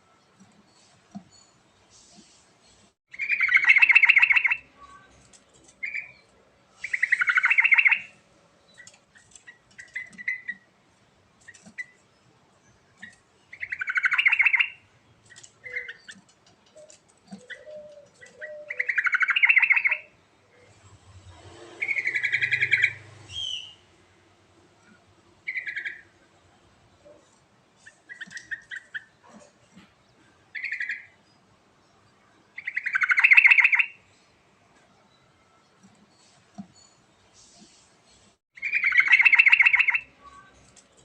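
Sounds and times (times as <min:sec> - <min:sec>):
bulbul singing: 0:03.1 - 0:05.1, 0:05.8 - 0:10.7, 0:13.0 - 0:20.1, 0:38.6 - 0:40.5.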